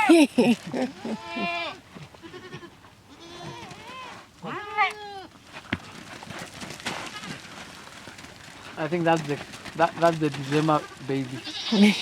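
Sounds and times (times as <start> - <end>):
goats bleating: 0.7 - 5.3, 10.4 - 12.0.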